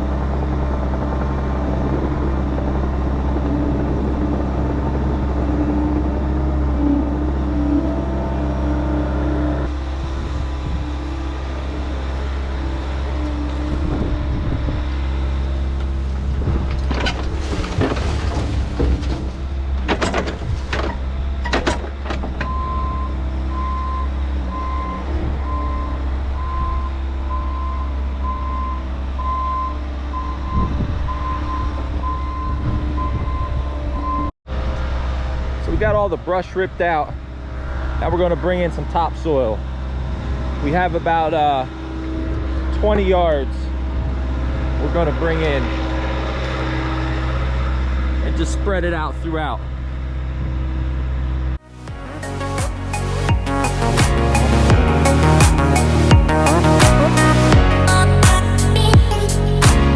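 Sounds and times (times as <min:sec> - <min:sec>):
diesel heavy equipment running: 0:00.0 - 0:59.9
metal clanks: 0:16.6 - 0:22.5
backup alarm beeping: 0:22.4 - 0:34.3.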